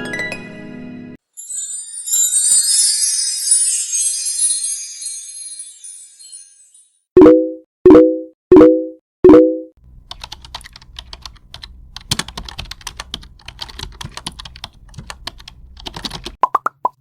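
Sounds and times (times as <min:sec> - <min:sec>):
loud pitched blip tones: 0:07.2 - 0:09.8
keyboard typing clicks: 0:10.0 - 0:16.4.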